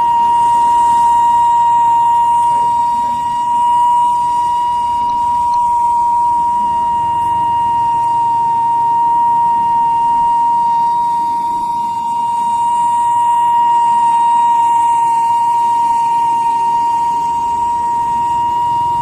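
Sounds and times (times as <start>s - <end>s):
high steam whistle: 0.0s - 19.0s.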